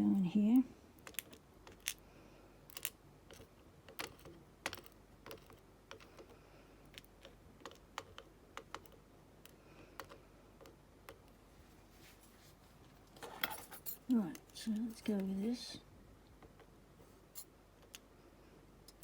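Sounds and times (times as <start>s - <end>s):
small metal parts clicking: 2.7s - 6.3s.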